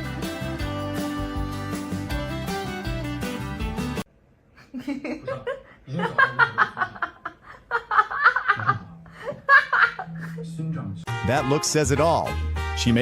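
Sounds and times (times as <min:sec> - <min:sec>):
guitar music: 0:00.0 - 0:04.0
person laughing: 0:04.6 - 0:10.5.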